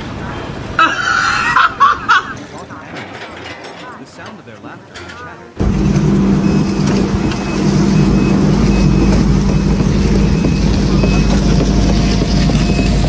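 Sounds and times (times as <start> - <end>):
engine running loudly: 5.6 - 13.0.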